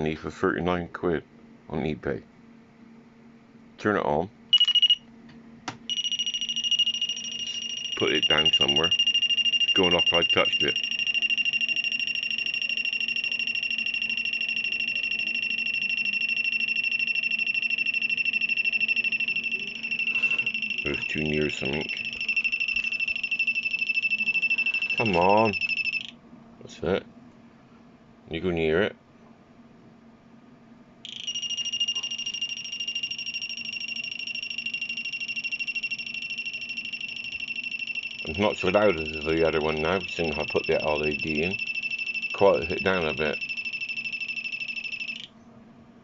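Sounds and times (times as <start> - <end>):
rapidly pulsing alarm buzzer: 5.9 - 26.1, 31.1 - 45.3.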